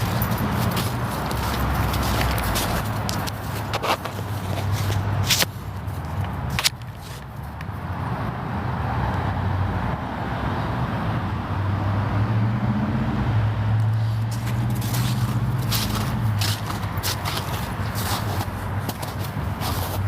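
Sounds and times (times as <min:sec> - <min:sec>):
vehicle driving past: 0:00.0 - 0:03.8, 0:08.0 - 0:20.0.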